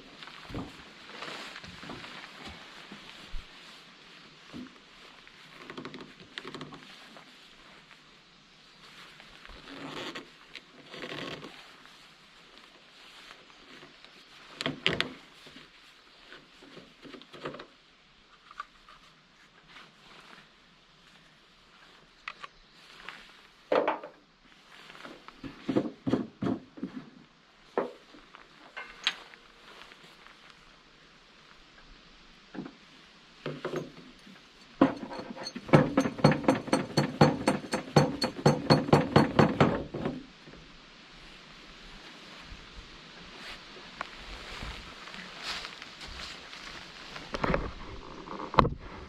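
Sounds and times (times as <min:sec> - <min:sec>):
objects knocking and clunking: 0:25.4 - 0:27.1, 0:33.4 - 0:40.2
ringing clinking taps: 0:34.8 - 0:39.4.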